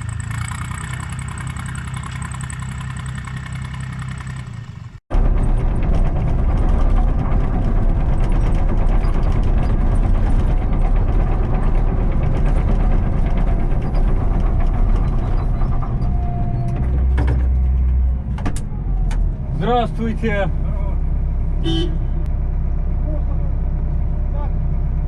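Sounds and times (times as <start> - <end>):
diesel engine rattling: 0.0 - 25.0
deep hum: 5.1 - 25.0.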